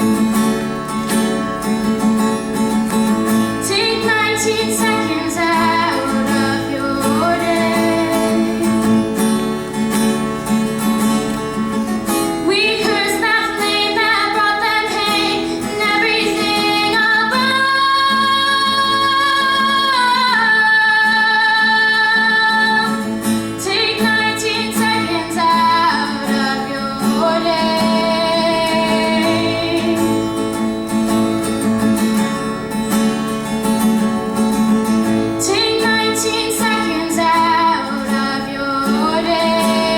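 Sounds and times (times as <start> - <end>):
strummed acoustic guitar: 0.0 - 39.9
young woman singing: 3.4 - 9.4, 12.1 - 30.8, 35.3 - 39.9.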